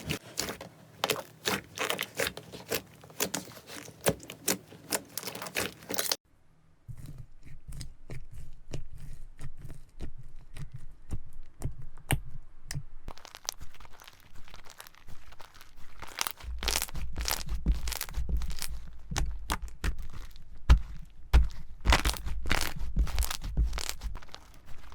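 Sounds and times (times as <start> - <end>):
slime crackling and popping: 0.0 - 6.2, 13.1 - 24.9.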